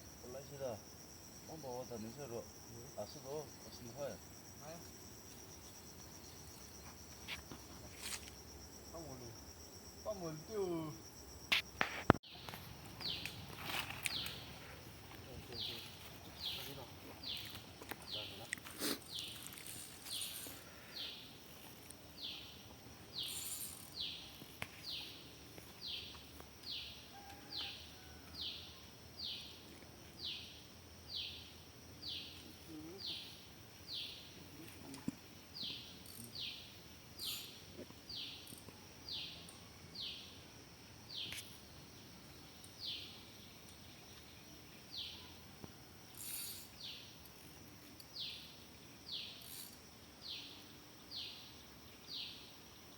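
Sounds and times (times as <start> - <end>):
faint outdoor background noise: 0.0 - 52.9.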